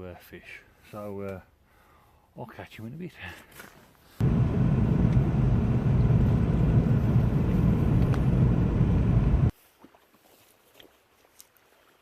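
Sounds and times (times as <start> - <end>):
car engine and road rumble: 4.2 - 9.5.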